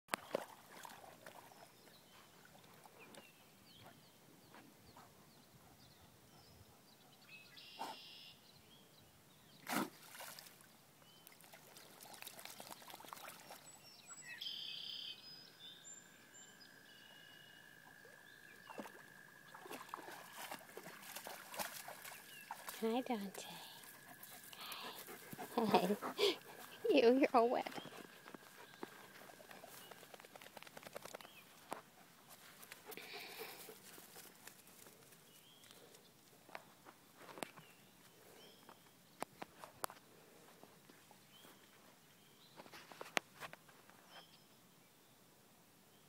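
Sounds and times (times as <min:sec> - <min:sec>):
pet sneezing into water: 0:09.6 - 0:10.1
faint water trickle: 0:10.0 - 0:14.0, 0:17.8 - 0:30.0.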